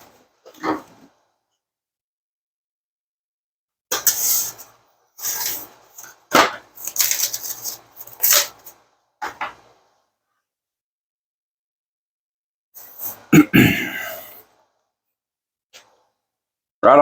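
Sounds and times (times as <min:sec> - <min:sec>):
packaging rustling and scraping: 0:03.9 - 0:08.8.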